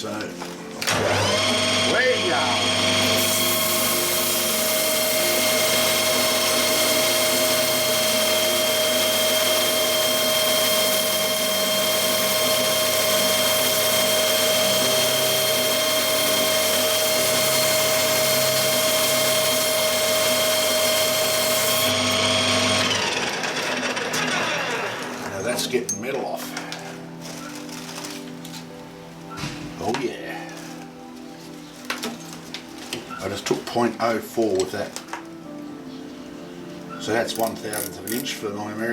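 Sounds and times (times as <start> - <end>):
power tool whining: 0.8 - 25.4.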